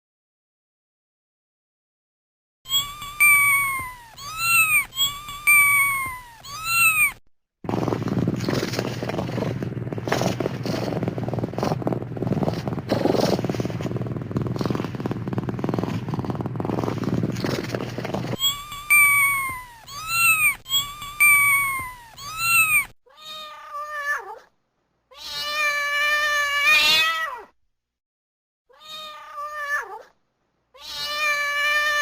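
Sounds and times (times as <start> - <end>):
cat meowing: 2.7 - 7.2, 18.4 - 24.5, 25.1 - 27.5, 28.7 - 30.1, 30.8 - 32.0
rough rumbling purr: 7.7 - 18.4.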